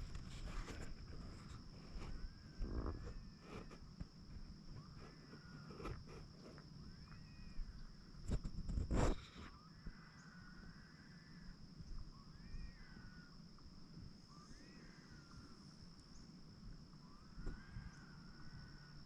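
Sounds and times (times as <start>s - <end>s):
high-pitched insect drone: 0.0s - 19.0s
wavering whistle-like animal cries: 12.2s - 13.3s, 17.0s - 19.0s.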